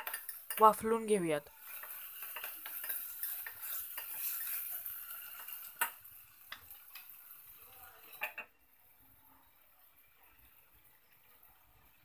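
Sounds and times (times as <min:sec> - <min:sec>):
spoon clinking on pot: 0:00.0 - 0:00.7
vegetables sizzling in a pot: 0:00.0 - 0:12.0.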